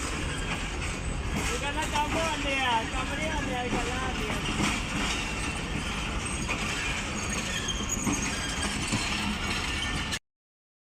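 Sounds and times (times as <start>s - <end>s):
high wheel squeals: 0.0s - 1.2s, 5.1s - 10.2s
train rumble and rail noise: 0.0s - 10.2s.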